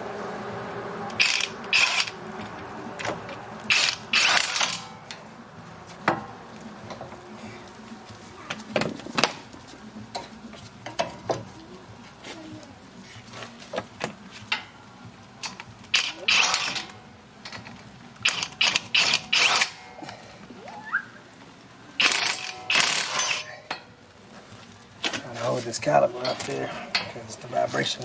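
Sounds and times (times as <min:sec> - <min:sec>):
ratchet clicking: 0:01.1 - 0:02.2, 0:03.7 - 0:04.9, 0:15.4 - 0:16.9, 0:18.2 - 0:19.8, 0:22.0 - 0:23.5.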